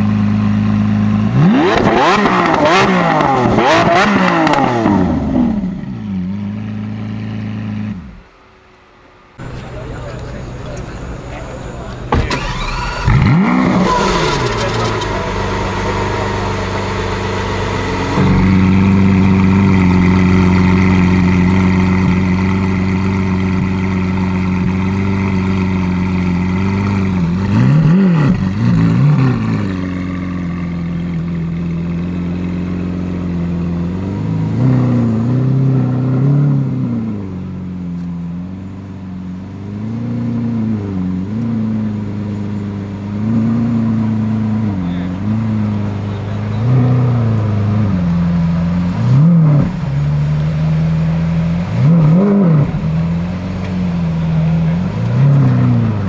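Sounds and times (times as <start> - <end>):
car engine idling: 9.4 - 34.6, 40.5 - 56.0.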